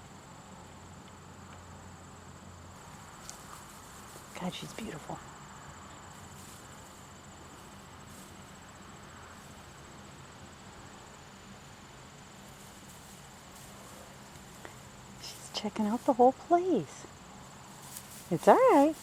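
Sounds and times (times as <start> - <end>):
insects trilling: 0.0 - 19.0
low background hiss: 0.0 - 19.0.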